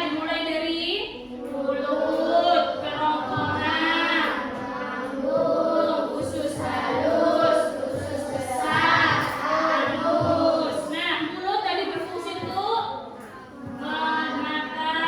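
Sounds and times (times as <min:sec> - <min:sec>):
group of voices singing: 0:01.3 - 0:11.4, 0:13.5 - 0:15.0.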